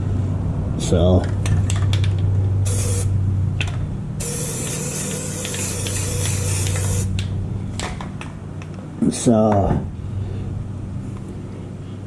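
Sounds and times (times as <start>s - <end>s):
steady low hum: 0.0s - 12.0s
spray can hissing: 2.7s - 3.1s, 4.2s - 7.1s.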